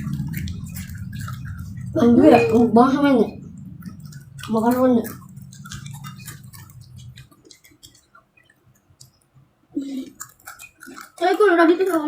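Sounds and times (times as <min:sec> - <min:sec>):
low hum: 0:00.0 - 0:09.1
crunchy snack chewing: 0:09.8 - 0:12.0.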